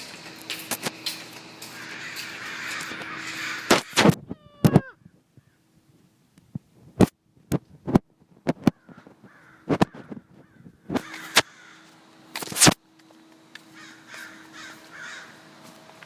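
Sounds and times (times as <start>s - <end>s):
crows cawing: 1.6s - 4.2s, 5.4s - 5.7s, 8.7s - 12.0s, 13.6s - 15.6s.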